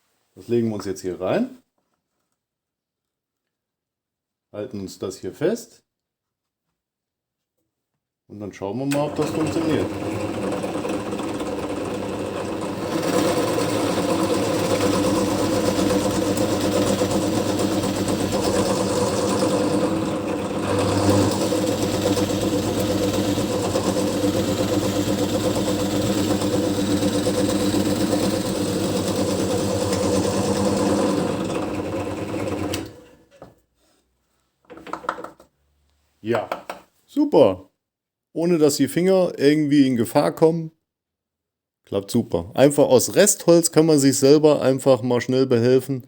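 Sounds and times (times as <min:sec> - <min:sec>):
drill press drilling: 0:08.9 - 0:33.2.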